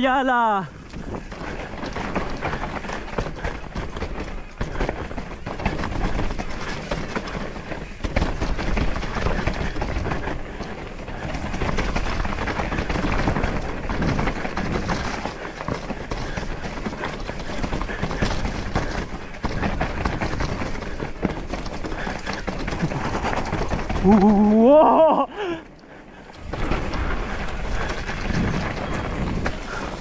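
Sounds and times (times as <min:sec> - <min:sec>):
tyres crunching over stones: 0:00.0 - 0:30.0
bike chain and frame clattering: 0:00.7 - 0:30.0
steady rumble: 0:00.7 - 0:30.0.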